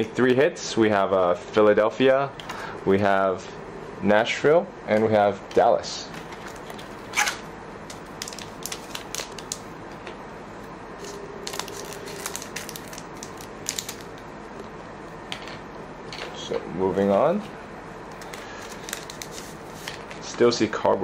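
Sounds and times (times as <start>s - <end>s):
foil wrappers and cards crinkling: 6.2s - 9.7s, 11.0s - 14.2s, 18.2s - 20.4s.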